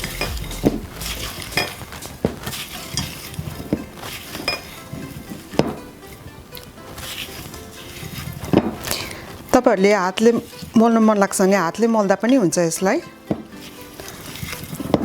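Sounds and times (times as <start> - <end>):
wet scraping and mashing: 0.0 - 5.8, 6.6 - 9.6, 13.3 - 15.0.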